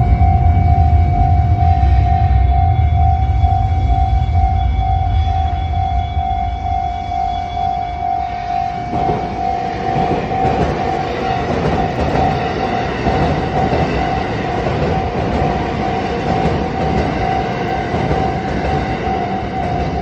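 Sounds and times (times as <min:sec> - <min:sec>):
level crossing warning bell: 0:00.0 - 0:20.0
train rumble and rail noise: 0:00.0 - 0:20.0.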